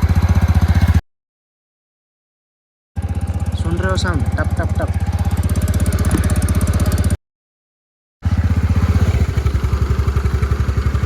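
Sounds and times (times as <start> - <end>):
scooter engine idling: 0.0 - 1.0, 3.0 - 7.2, 8.2 - 11.0.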